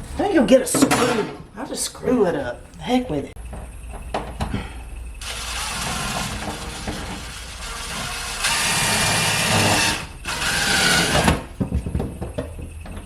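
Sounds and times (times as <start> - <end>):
power drill driving a screw: 5.2 - 11.4.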